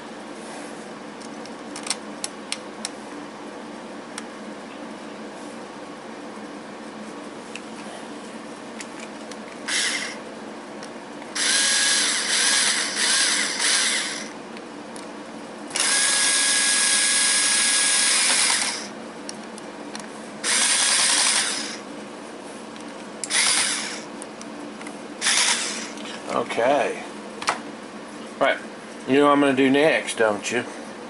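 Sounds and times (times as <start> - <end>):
power drill whining: 9.7 - 10.2, 11.4 - 14.3, 15.8 - 18.9, 20.4 - 21.8, 23.3 - 24.1, 25.2 - 26.0.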